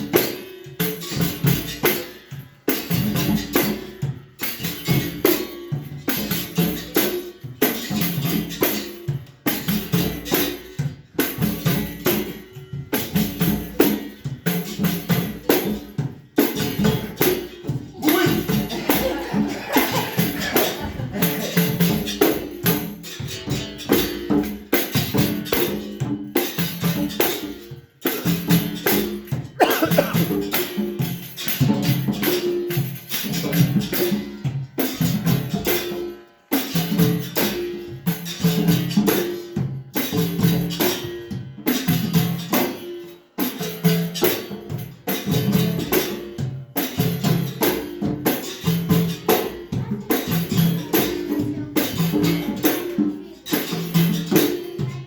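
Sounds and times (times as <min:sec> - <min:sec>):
pandeiro and drum rhythm: 0:00.0 - 0:55.0
berimbau: 0:16.5 - 0:24.4.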